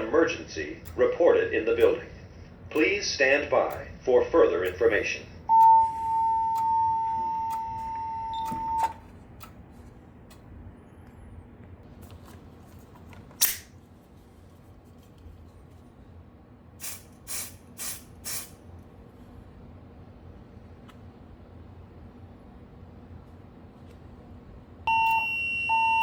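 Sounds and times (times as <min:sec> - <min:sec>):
high alert tone: 0:05.5 - 0:09.0.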